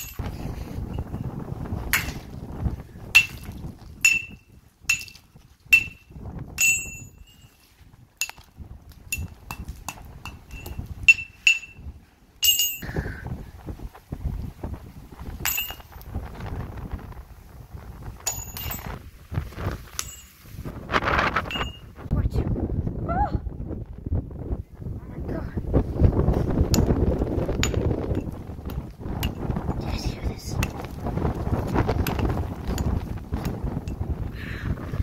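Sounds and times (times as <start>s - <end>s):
metal object struck with ring: 6.6s - 7.4s, 12.4s - 12.8s.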